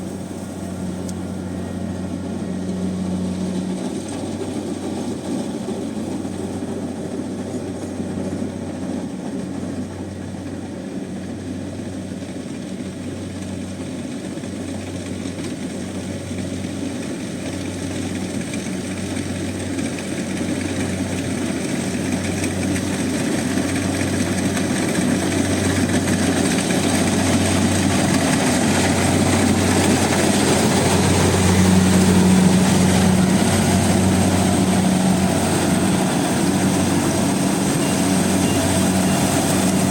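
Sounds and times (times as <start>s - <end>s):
combine harvester engine running: 0.0s - 39.9s
high whine: 26.3s - 39.9s.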